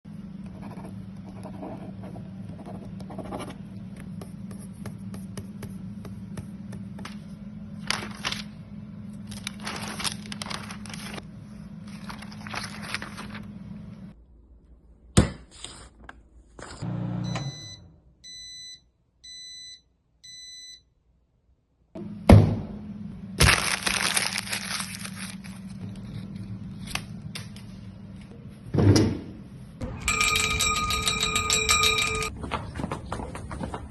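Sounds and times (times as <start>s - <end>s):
steady low hum: 0.1s - 15.1s.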